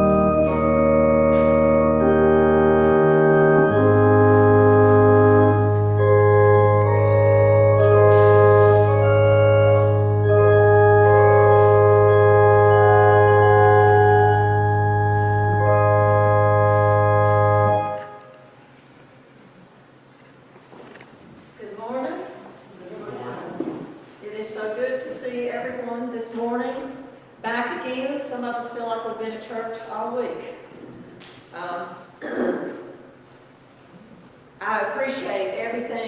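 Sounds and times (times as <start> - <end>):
church organ chords: 0.0 - 18.6.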